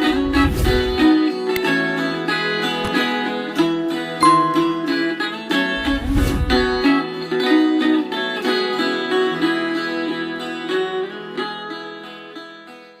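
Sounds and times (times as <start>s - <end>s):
viola caipira picked notes: 4.2s - 5.0s.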